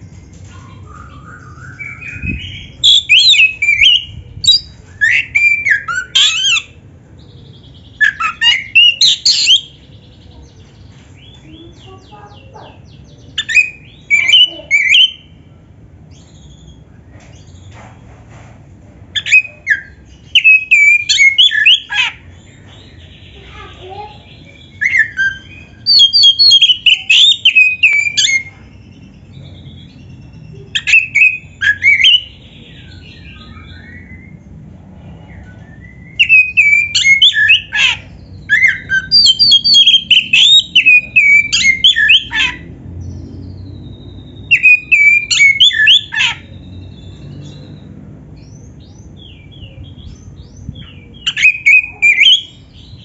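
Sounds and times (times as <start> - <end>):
bird singing whistled phrases: 0.5 - 6.8, 7.9 - 9.8, 13.4 - 15.3, 19.2 - 22.1, 24.4 - 29.4, 30.0 - 34.5, 35.4 - 42.6, 43.6 - 47.8, 50.8 - 52.8.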